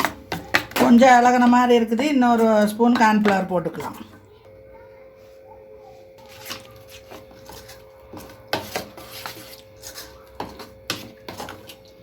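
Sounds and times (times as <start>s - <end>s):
spoon clinking and scraping bowl: 6.2s - 12.0s.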